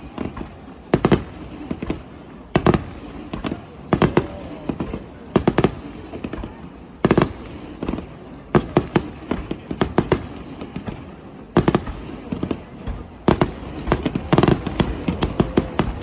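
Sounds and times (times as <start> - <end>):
fireworks bursting bangs: 0.0 - 16.0.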